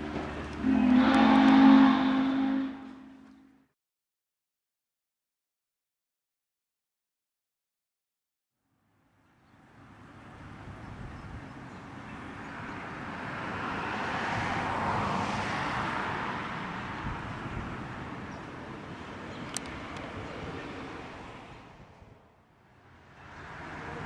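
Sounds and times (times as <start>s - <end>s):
vehicle passing by: 0.0s - 3.5s, 9.8s - 24.0s.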